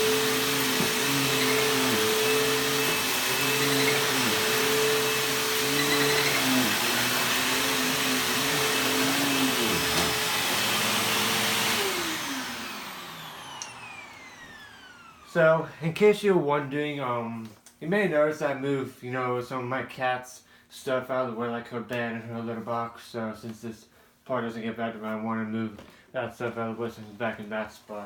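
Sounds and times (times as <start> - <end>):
vacuum cleaner running on carpet: 0.0 - 15.3
vacuum motor winding down: 0.0 - 15.4.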